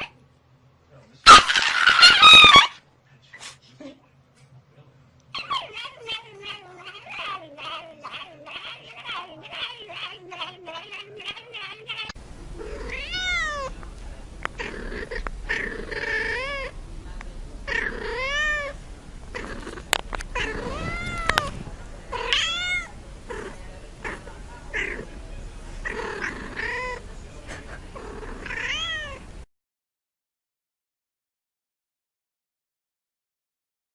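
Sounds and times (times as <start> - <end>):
cat meowing: 5.4 - 13.7, 17.7 - 18.8, 20.4 - 22.9, 28.4 - 29.2.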